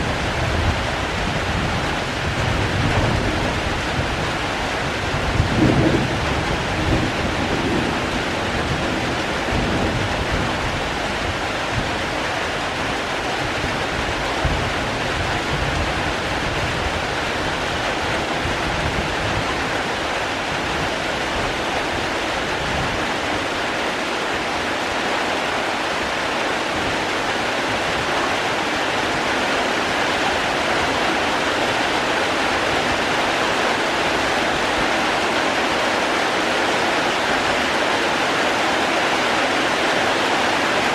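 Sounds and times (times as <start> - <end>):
low rumble of thunder: 0.0 - 12.0
heavy rain: 0.0 - 40.9.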